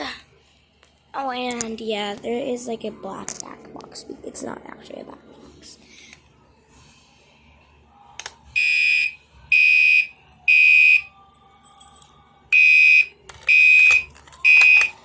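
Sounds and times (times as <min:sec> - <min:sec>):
fire alarm horn blasts: 0:08.6 - 0:11.1, 0:12.5 - 0:14.9.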